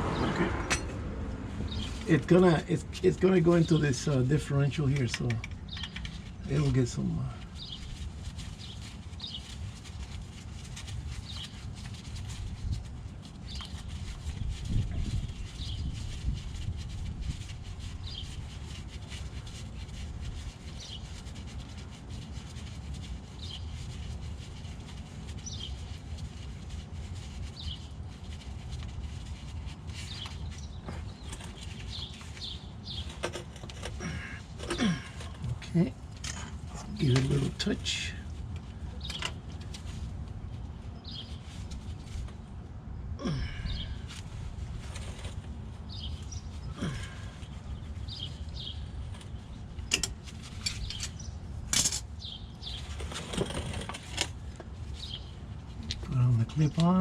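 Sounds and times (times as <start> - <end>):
steady low rumble: 0.0 - 20.5
bird chirping: 1.7 - 8.0, 8.6 - 9.6, 30.0 - 33.2, 40.9 - 41.8, 45.8 - 50.0, 50.6 - 51.4, 52.1 - 53.1, 54.9 - 55.4.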